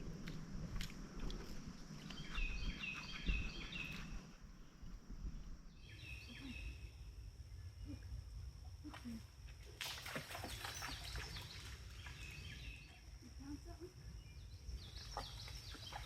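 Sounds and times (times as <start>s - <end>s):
footsteps on trail: 0.0s - 5.0s
low rumble: 0.0s - 8.7s.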